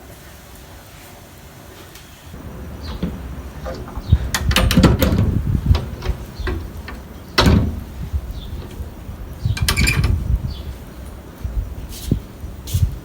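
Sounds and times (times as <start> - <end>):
sharp clicks and knocks: 2.4 - 11.2.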